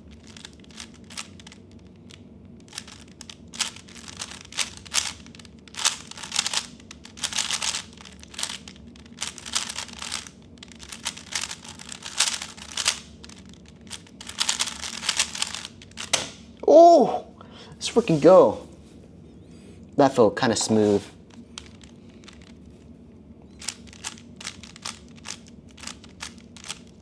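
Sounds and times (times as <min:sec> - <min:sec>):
puzzle cube plastic clicking: 0:00.1 - 0:16.3, 0:21.3 - 0:22.6, 0:23.6 - 0:27.0.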